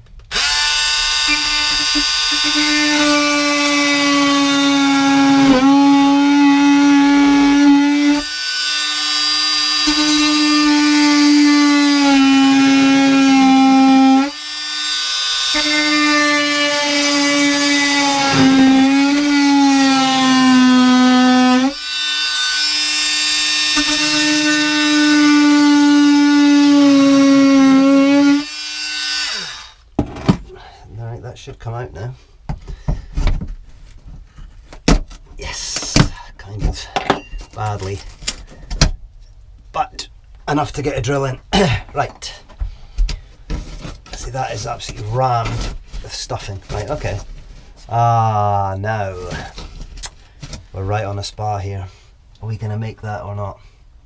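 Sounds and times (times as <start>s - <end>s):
oscillating multi-tool cutting: 0.3s - 4.9s, 27.7s - 29.8s.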